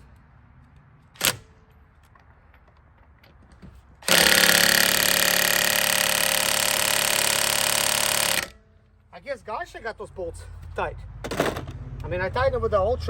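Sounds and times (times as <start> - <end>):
impact wrench hammering: 4.0 - 8.6.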